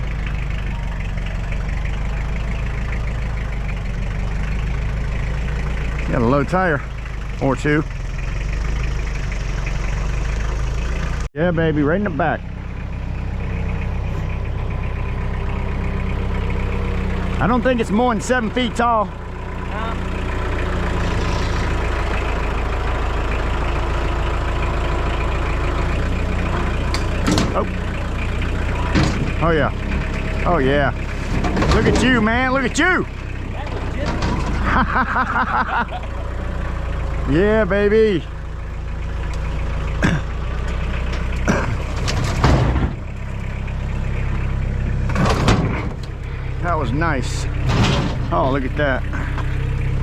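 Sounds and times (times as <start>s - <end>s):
engine idling: 0.0s - 50.0s
scrap metal clanking: 31.0s - 32.3s, 33.7s - 34.8s, 40.0s - 43.4s.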